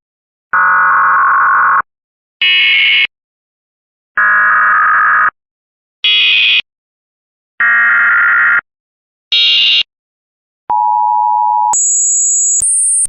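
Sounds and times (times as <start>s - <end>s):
two-tone attention signal: 10.7s - 13.0s.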